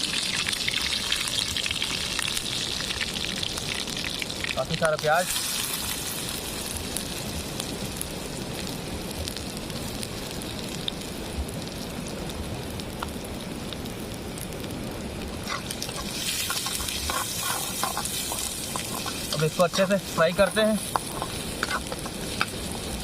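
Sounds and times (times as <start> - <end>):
food sizzling in hot oil: 0.0 - 23.0
oil popping and crackling: 0.0 - 23.0.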